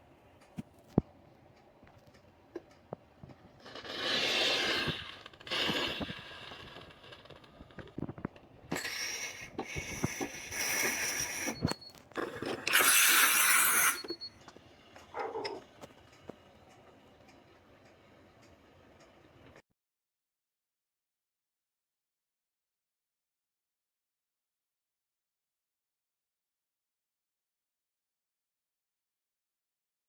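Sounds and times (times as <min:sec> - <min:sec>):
steam wand hissing: 0:03.6 - 0:07.9, 0:08.7 - 0:14.3
thin high whistle: 0:08.8 - 0:11.9, 0:12.7 - 0:14.5.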